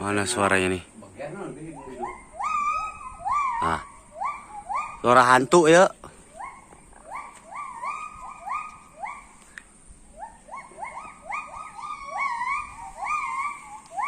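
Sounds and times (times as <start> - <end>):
primate whoop calls: 2.0 - 5.2, 6.3 - 14.0.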